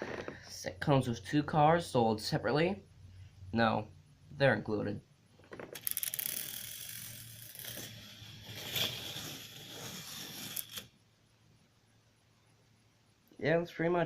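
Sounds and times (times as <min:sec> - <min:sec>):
toy roller coaster motor rattling: 0:05.8 - 0:10.9.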